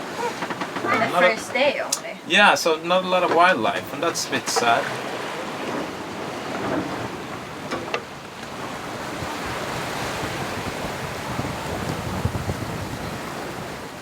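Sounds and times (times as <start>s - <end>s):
sea waves washing: 0.0s - 14.0s
wind buffeting microphone: 3.2s - 14.0s.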